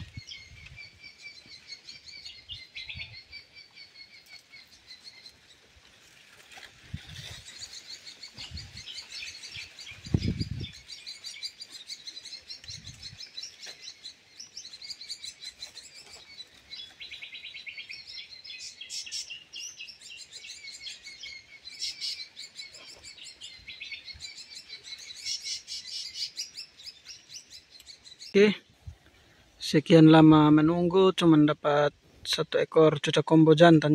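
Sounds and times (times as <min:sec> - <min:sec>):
wind buffeting microphone: 0:00.0 - 0:01.2, 0:06.8 - 0:07.6, 0:08.4 - 0:10.9, 0:12.7 - 0:13.2
small birds chirping: 0:00.0 - 0:33.9.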